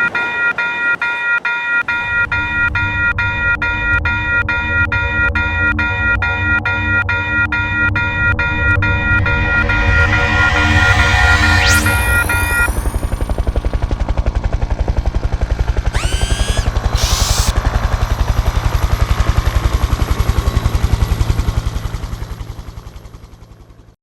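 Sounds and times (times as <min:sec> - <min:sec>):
helicopter rotor chopping: 0:08.8 - 0:21.6
rising electronic zap: 0:08.9 - 0:13.5, 0:16.0 - 0:17.5
short hiss: 0:16.5 - 0:17.5.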